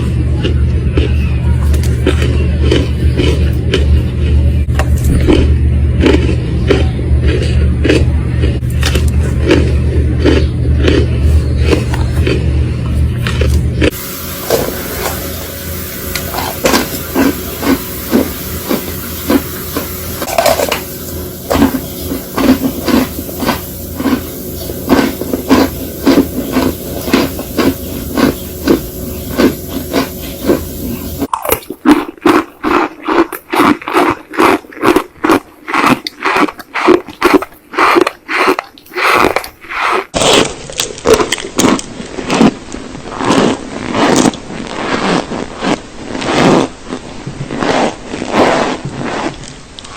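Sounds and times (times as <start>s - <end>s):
brittle material crunching: 16.2s - 49.9s.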